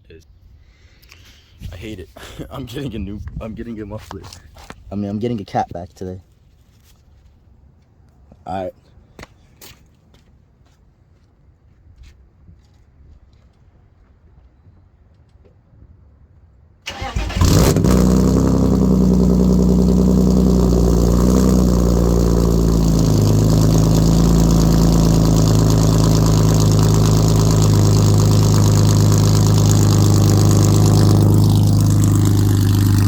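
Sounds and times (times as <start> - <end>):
engine cranking: 16.9 - 33.0
loud car engine idling: 17.1 - 33.0.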